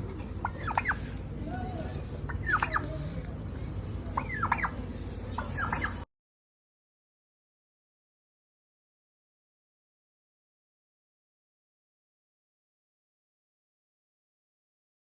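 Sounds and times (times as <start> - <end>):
turkey gobbling: 0.0 - 3.3, 4.1 - 6.0.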